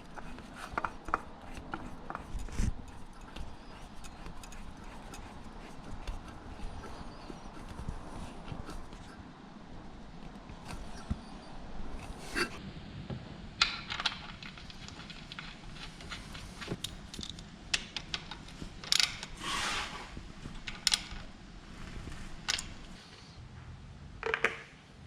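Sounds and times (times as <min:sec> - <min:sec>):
tools clicking and knocking: 0:00.0 - 0:09.1, 0:13.6 - 0:19.4
tool scraping metal: 0:19.3 - 0:20.2.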